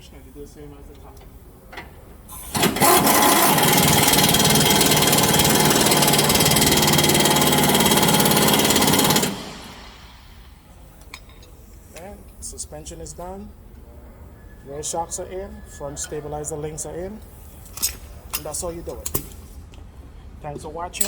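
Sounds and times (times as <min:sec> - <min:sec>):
impact wrench hammering: 0:02.5 - 0:10.1.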